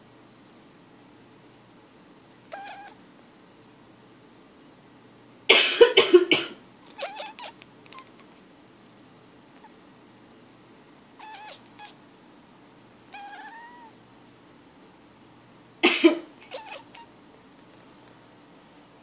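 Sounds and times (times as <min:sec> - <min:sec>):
cat meowing: 0:02.5 - 0:03.0, 0:06.9 - 0:08.1, 0:11.2 - 0:12.0, 0:13.1 - 0:14.0, 0:16.4 - 0:17.1
woman coughing: 0:05.5 - 0:06.6, 0:15.8 - 0:16.3.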